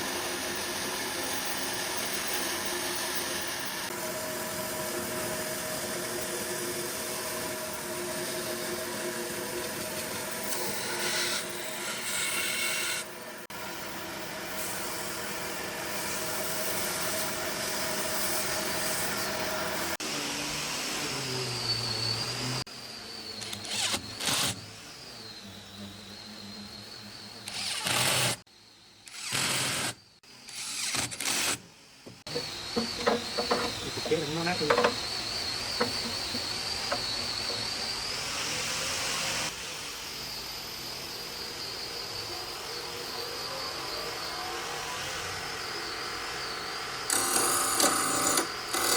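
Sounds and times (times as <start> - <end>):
electric power tool motor running: 23.4 - 24.7, 27.4 - 28.4, 29.0 - 31.6, 46.4 - 48.9.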